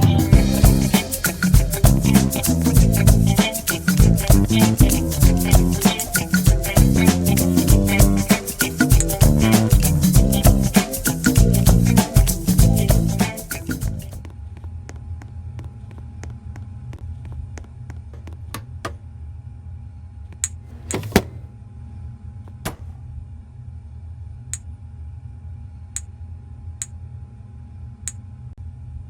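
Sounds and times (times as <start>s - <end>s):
clicks and knocks: 20.7s - 21.5s, 22.6s - 23.0s.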